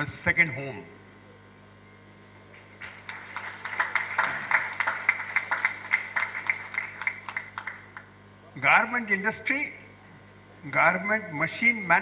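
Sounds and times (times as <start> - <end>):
audience applauding: 2.5 - 8.2.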